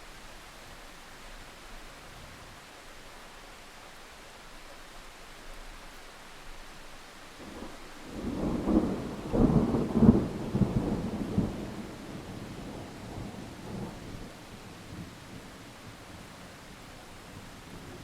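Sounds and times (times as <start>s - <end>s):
steady rain: 0.0s - 18.0s
thunder rumbling and cracking: 7.5s - 15.4s.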